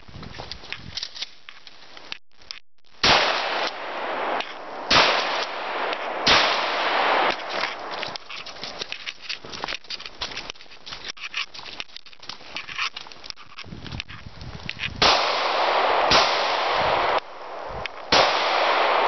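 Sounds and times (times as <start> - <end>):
rifle shots echoing: 3.0 - 8.8, 15.0 - 19.0.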